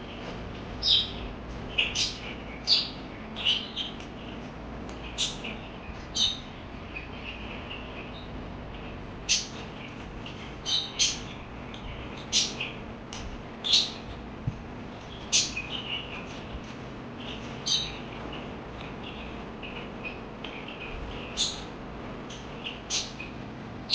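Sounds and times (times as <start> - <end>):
parakeets twittering: 0.0 - 23.9
parakeets squawking: 0.8 - 4.4, 5.0 - 9.9, 10.6 - 12.8, 17.2 - 21.7.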